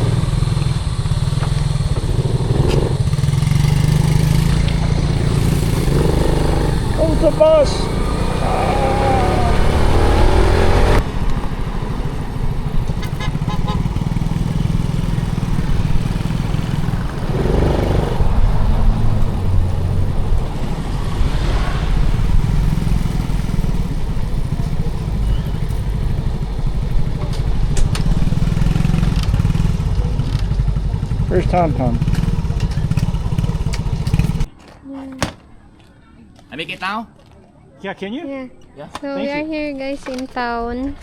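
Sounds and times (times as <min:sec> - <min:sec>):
motorcycle engine rumbling: 0:00.0 - 0:36.1.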